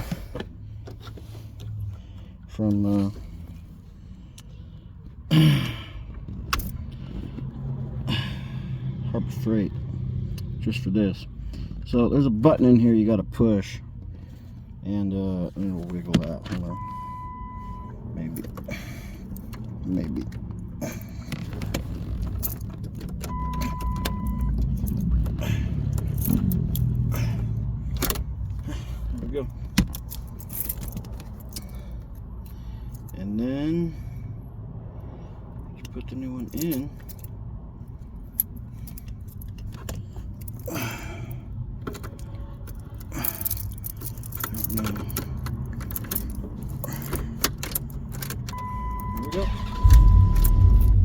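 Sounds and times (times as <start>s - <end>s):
steady beep: 16.7s - 17.9s, 23.3s - 24.5s, 48.6s - 51.0s
keys jangling: 22.2s - 27.0s, 29.9s - 31.8s, 41.9s - 48.6s
low steady rumble: 48.6s - 51.0s.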